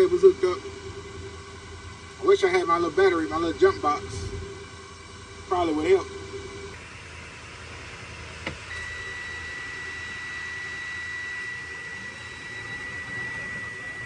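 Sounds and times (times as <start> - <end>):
high-pitched electronic tone: 8.7 - 14.0.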